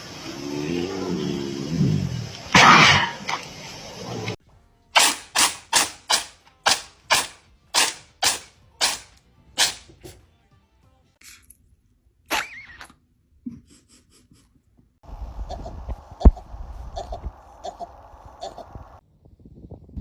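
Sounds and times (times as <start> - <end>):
animal sneezing: 2.5 - 3.4.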